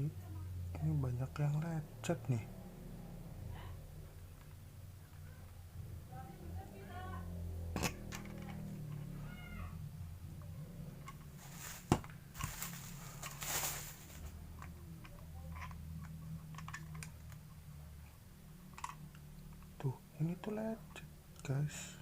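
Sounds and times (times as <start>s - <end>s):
low hum: 0.0s - 22.0s
packaging rustle: 11.4s - 14.4s.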